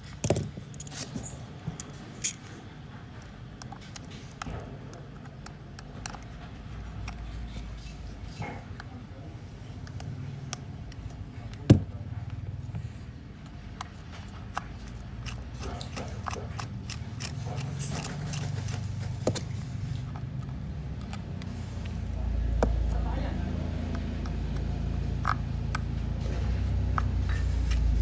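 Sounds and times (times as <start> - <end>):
metal tools clicking on phone: 13.8 - 21.2
low hum: 23.5 - 28.0.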